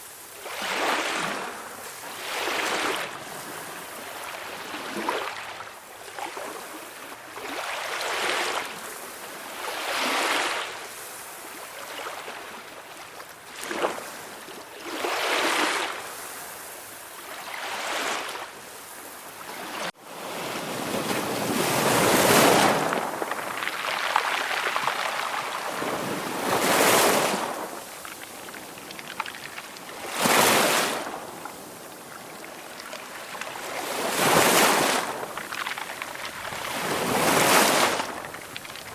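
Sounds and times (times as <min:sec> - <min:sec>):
ocean waves breaking: 0:19.6 - 0:38.9.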